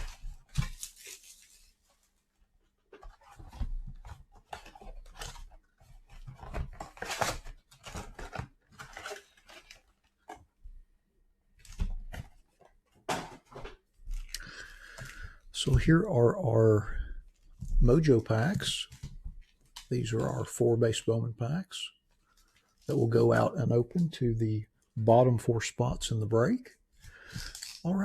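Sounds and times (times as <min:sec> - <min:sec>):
cardboard and wrapping tearing: 0:00.0 - 0:01.8, 0:03.2 - 0:09.8.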